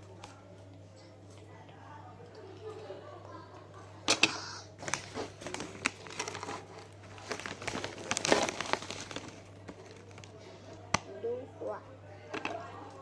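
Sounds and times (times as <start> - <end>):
plastic packaging crinkling: 4.8 - 10.4.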